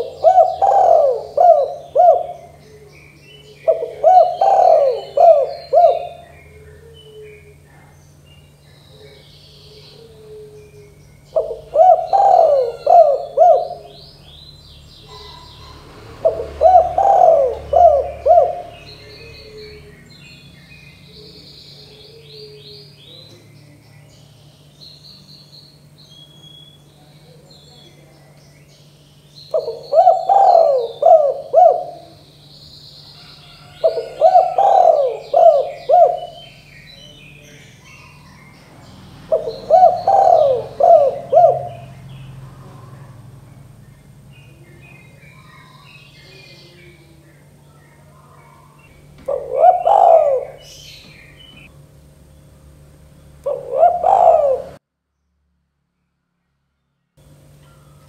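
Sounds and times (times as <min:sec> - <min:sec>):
dove cooing: 0:00.0 - 0:23.8, 0:29.4 - 0:32.4, 0:33.0 - 0:43.8, 0:44.5 - 0:51.7, 0:53.4 - 0:54.8
low steady hum: 0:00.0 - 0:58.0
small birds chirping faintly: 0:00.0 - 0:58.0.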